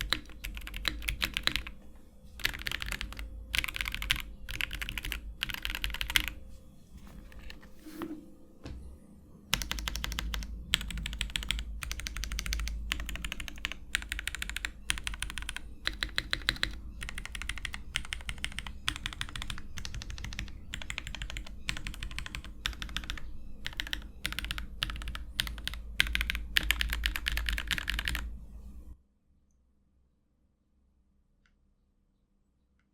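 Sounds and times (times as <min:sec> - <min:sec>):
mechanical keyboard typing: 0:00.0 - 0:01.8, 0:02.4 - 0:06.4, 0:09.5 - 0:28.3.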